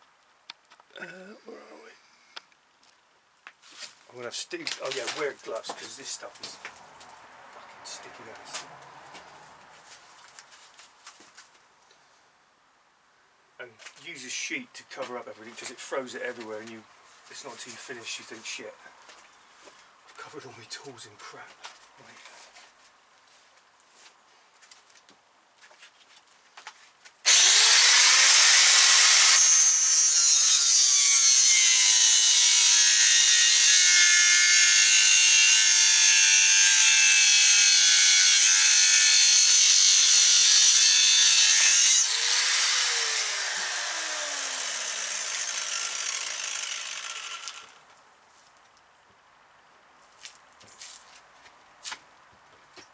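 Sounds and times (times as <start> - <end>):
power tool cutting cable: 27.3 - 47.8
power tool winding down whine: 27.3 - 47.8.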